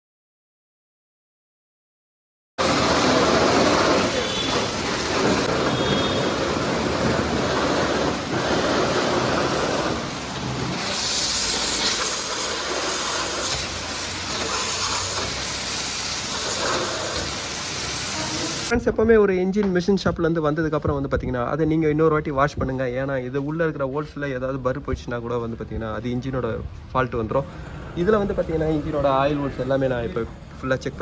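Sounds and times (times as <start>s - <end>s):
high-pressure spray jet hissing: 2.6s - 18.7s.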